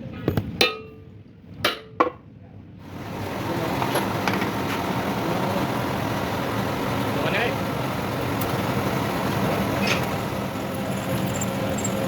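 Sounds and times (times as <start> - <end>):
steady machine noise: 2.8 - 12.0
steel parts clanking: 10.8 - 12.0.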